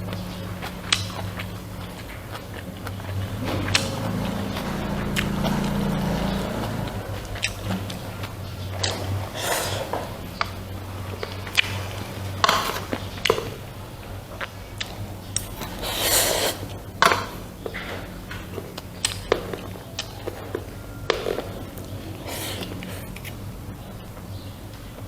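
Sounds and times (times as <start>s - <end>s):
utensil scraping a bowl: 15.6s - 16.8s.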